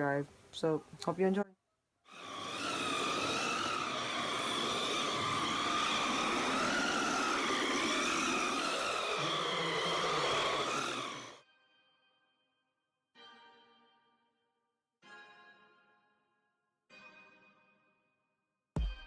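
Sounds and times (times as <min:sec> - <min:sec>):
small electric motor whining: 0:02.1 - 0:11.4.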